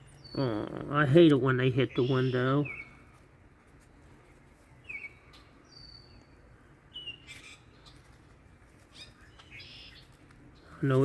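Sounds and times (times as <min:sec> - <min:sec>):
bird chirps: 0:01.7 - 0:03.0, 0:04.6 - 0:08.2, 0:08.9 - 0:11.0.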